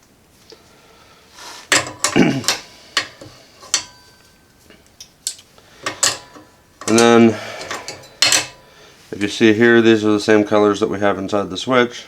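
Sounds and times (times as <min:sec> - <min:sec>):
wire cutters snipping wires: 0:05.2 - 0:08.6.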